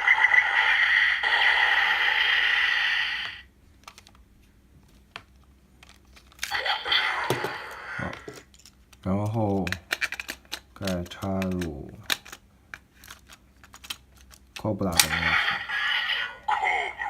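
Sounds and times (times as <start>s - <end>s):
loud harsh electronic noise: 0.0s - 3.4s
faint clicks of toy parts: 3.2s - 6.6s, 7.3s - 15.4s.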